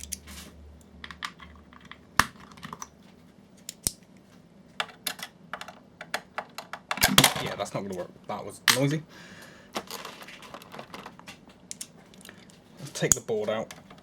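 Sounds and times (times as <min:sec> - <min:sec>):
plastic housing clicks and knocks: 0:04.8 - 0:07.6.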